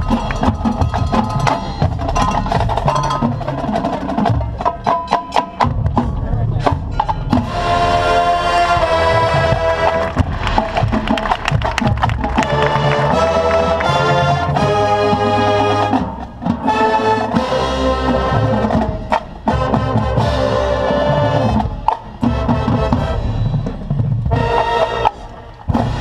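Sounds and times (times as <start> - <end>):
drums and percussion: 0.0 - 26.0
brass chords: 5.8 - 26.0.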